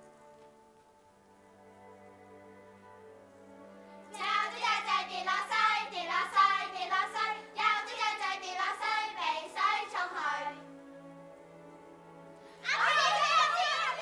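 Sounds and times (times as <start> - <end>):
soft background music: 0.0 - 14.0
child singing: 4.2 - 10.6, 12.6 - 14.0.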